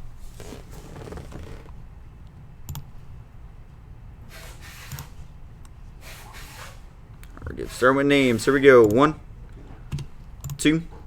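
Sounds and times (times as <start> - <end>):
soft rustling: 0.0 - 1.8.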